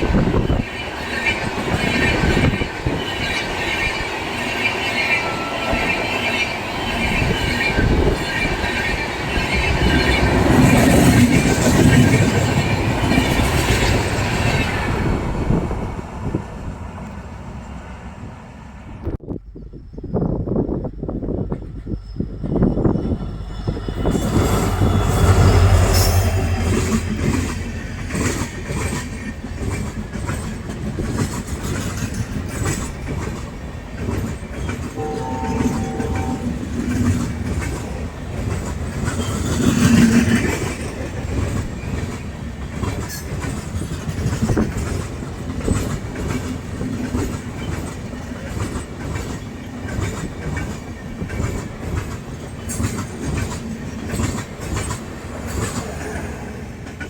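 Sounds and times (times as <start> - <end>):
train horn: 5.1 - 6.4, 35.0 - 37.6
train wheels clattering over rails: 23.6 - 35.0, 36.8 - 57.0.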